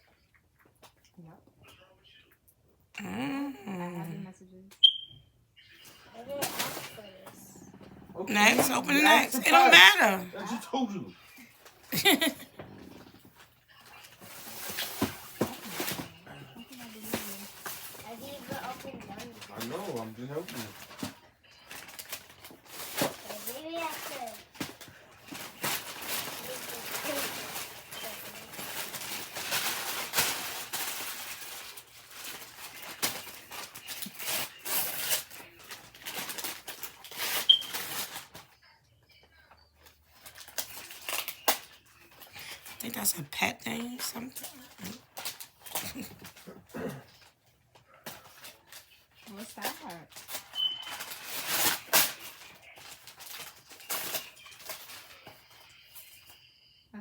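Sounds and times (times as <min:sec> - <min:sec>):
gift packaging rustling: 0:05.9 - 0:10.6, 0:11.6 - 0:38.6, 0:39.8 - 0:47.3, 0:48.0 - 0:56.4
wrapping paper tearing and crumpling: 0:13.9 - 0:38.5, 0:39.8 - 0:42.8, 0:44.2 - 0:47.3, 0:48.0 - 0:55.8.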